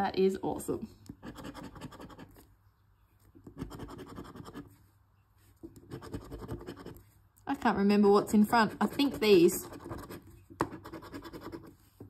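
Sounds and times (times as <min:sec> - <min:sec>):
scratch-off ticket being scratched: 0:05.8 - 0:07.0.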